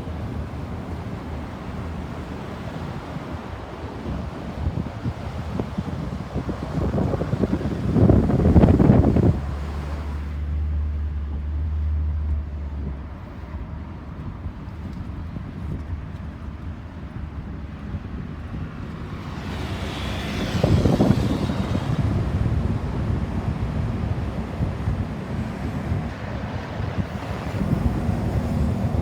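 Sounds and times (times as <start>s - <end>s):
wind on microphone: 0.0s - 10.4s, 13.9s - 29.0s
low engine hum: 0.0s - 29.0s
vehicle passing close: 4.1s - 10.5s, 19.0s - 29.0s.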